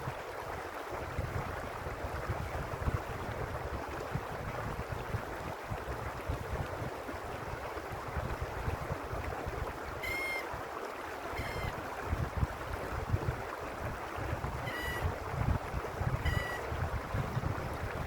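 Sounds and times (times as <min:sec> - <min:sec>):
stream water rushing: 0:00.0 - 0:18.0
bird calls: 0:10.0 - 0:10.5, 0:11.3 - 0:11.8, 0:14.6 - 0:15.1, 0:16.2 - 0:16.7.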